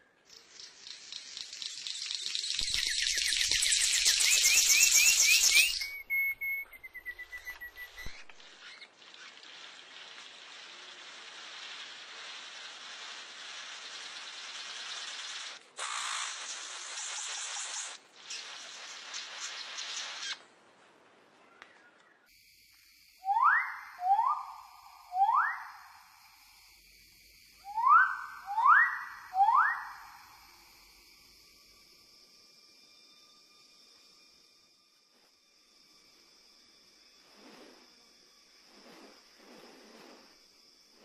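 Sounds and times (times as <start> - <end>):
steady rushing hiss: 8.0 - 21.2, 30.2 - 41.0.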